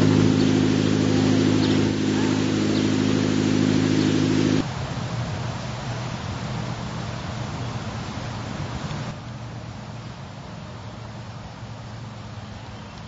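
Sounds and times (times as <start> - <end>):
low hum: 0.0 - 4.6
engine running steadily: 0.0 - 4.8.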